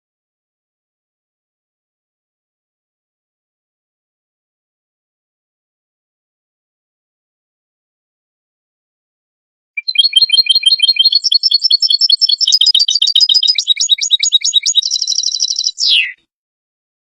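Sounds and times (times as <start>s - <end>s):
goldfinch twittering song: 9.8s - 16.2s.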